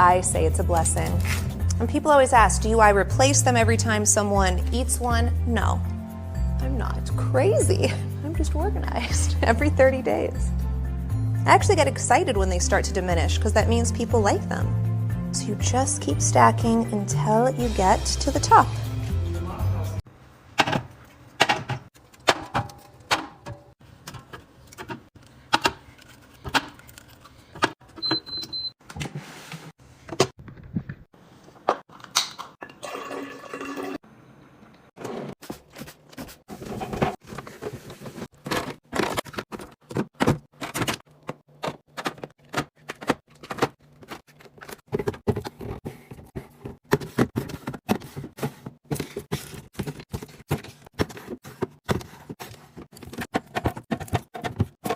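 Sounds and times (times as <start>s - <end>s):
packages clicking and knocking: 36.8s - 54.9s.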